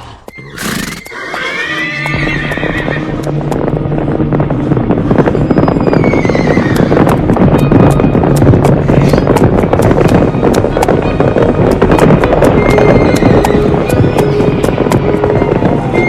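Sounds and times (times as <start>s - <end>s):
horse whinnying: 0.4s - 3.0s.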